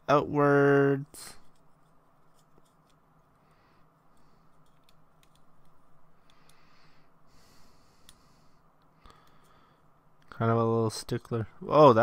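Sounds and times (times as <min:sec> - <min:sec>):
plastic model parts clicking: 0:04.6 - 0:06.5.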